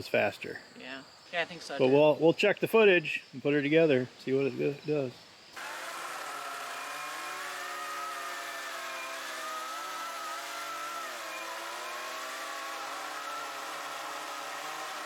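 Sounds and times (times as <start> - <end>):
chainsaw running at high speed: 5.6 - 15.0.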